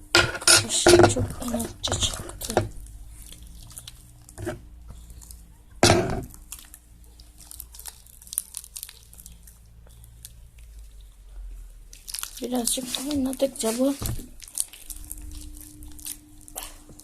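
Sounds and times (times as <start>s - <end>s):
slime crackling and tearing: 0.6s - 5.4s, 6.3s - 11.2s, 11.8s - 17.0s
loud knock: 5.8s - 6.3s.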